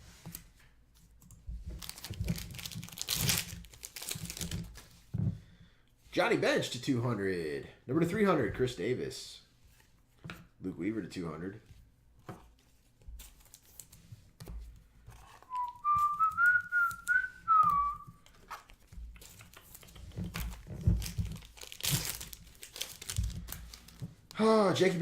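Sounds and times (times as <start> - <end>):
packaging crinkling and tapping: 1.6 - 4.9, 12.3 - 24.4
person whistling a tune: 15.5 - 18.1.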